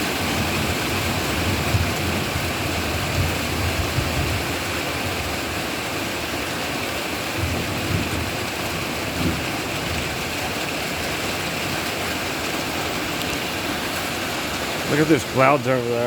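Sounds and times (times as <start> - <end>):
heavy rain: 0.0 - 16.0.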